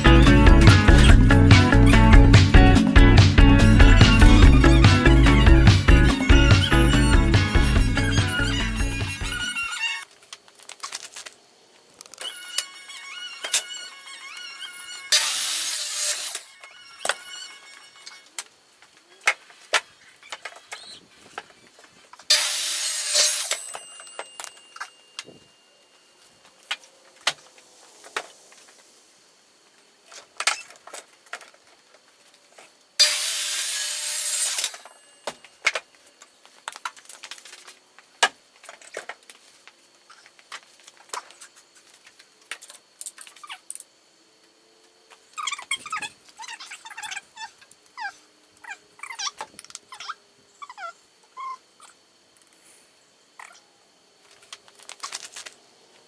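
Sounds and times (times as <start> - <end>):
sawing on wood: 12.3 - 18.2, 22.3 - 23.6.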